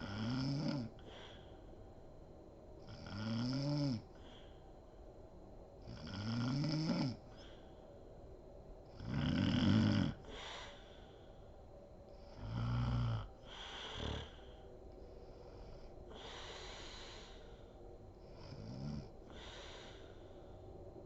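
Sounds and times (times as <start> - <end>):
woman snoring: 0.0 - 1.1, 2.9 - 4.0, 5.9 - 7.4, 9.0 - 10.8, 12.3 - 14.6, 18.3 - 20.0
snort: 0.0 - 1.4, 2.9 - 4.0, 5.9 - 7.6, 9.0 - 10.8, 12.3 - 14.6, 18.3 - 20.0.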